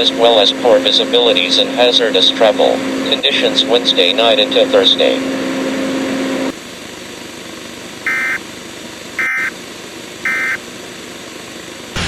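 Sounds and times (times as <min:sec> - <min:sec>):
warbling digital data tones: 0:08.1 - 0:08.4, 0:09.2 - 0:09.5, 0:10.3 - 0:10.6
low steady hum: 0:08.1 - 0:08.5, 0:10.2 - 0:10.7.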